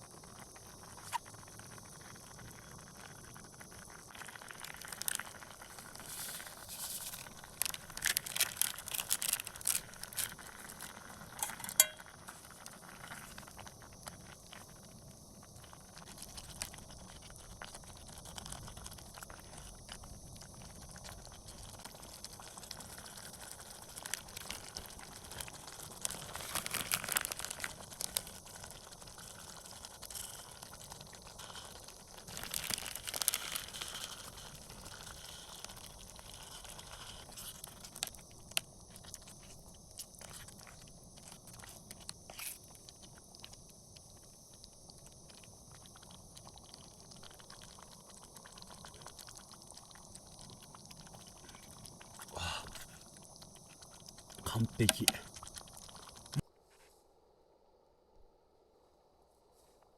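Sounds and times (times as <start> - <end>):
cookware clinking and scraping: 11.4 - 12.0.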